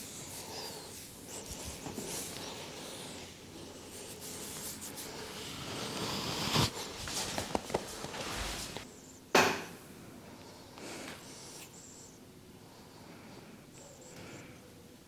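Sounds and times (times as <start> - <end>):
hands rubbing over hair: 0.0 - 3.3, 3.9 - 8.9.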